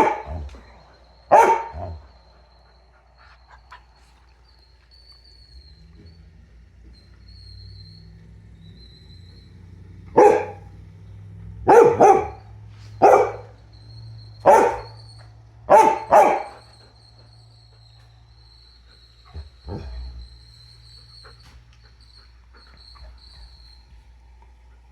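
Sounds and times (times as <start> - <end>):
dog barking: 0.0 - 2.2, 10.0 - 13.6, 14.2 - 17.2, 19.3 - 20.1.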